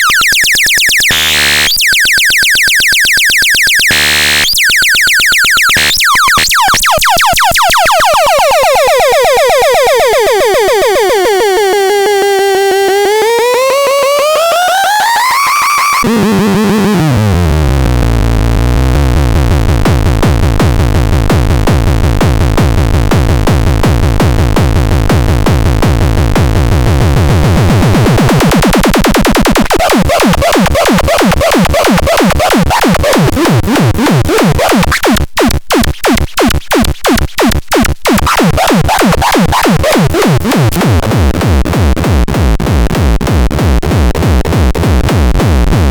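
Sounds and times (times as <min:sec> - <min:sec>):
electronic synthesizer music: 0:00.0 - 0:20.2.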